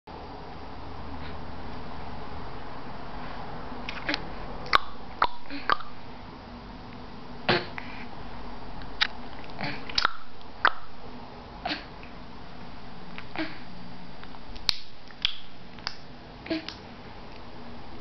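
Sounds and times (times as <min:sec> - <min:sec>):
baby making clicking noises: 0:14.6 - 0:16.8.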